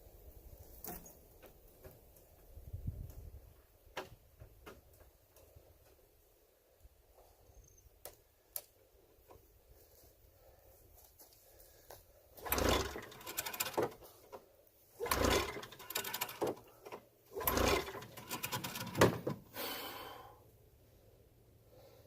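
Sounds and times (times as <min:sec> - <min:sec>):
recoil starter rope pulled: 0:12.3 - 0:19.6
engine whirring ratchet: 0:12.4 - 0:14.3, 0:15.0 - 0:19.4.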